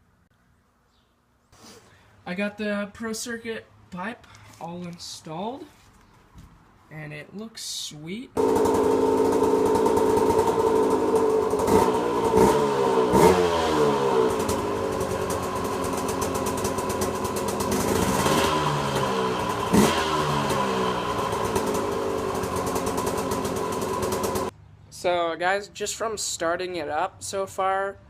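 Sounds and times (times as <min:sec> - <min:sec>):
two-stroke engine idling: 0:08.4 - 0:24.5.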